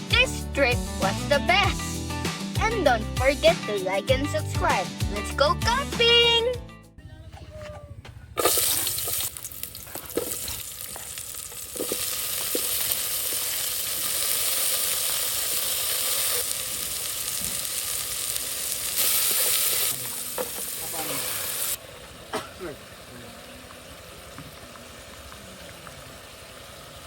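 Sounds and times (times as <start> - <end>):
sizzling hiss: 8.4 - 27.0.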